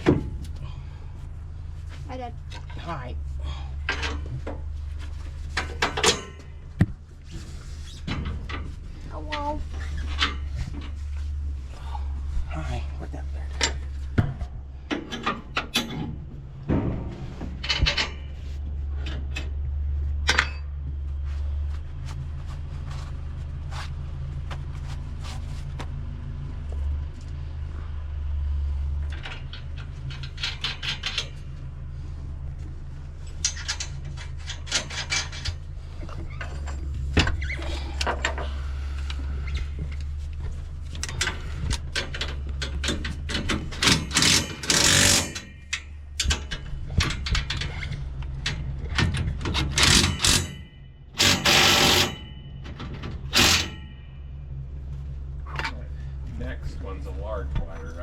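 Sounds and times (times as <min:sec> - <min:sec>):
steady low hum: 0:00.0 - 0:58.0
metal knocks and clanks: 0:05.5 - 0:07.0, 0:13.5 - 0:21.0, 0:33.4 - 0:38.6, 0:40.9 - 0:54.2.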